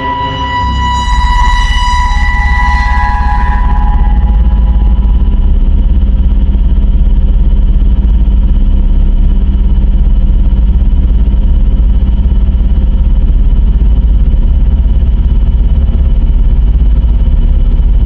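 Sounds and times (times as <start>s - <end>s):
distorted synthesizer drone: 0.0s - 7.2s.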